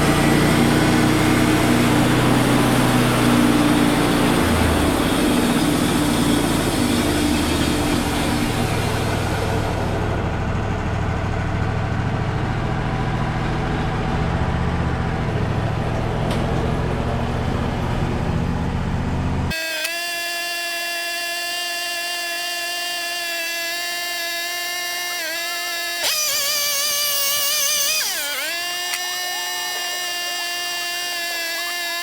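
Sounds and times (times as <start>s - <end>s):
sawmill engine drone: 0.0s - 32.0s
horn-like tone: 19.5s - 23.8s.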